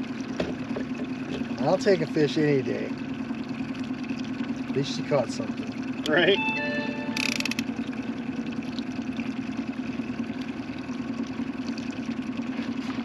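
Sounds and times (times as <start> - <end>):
boat motor humming: 0.0 - 13.0.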